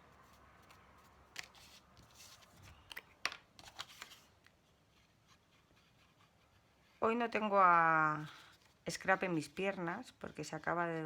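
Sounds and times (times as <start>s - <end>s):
paper rustling and tapping: 0.6s - 4.6s.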